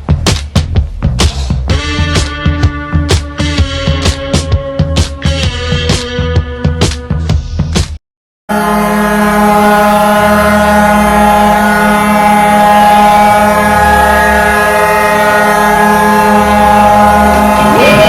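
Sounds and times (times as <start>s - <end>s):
hockey arena goal horn blast: 8.5s - 18.0s.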